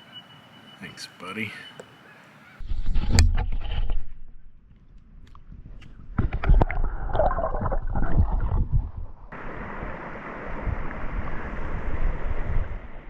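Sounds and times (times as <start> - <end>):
water sloshing and splashing: 5.2 - 13.0
wind buffeting microphone: 7.4 - 13.0
river water rushing: 9.3 - 13.0.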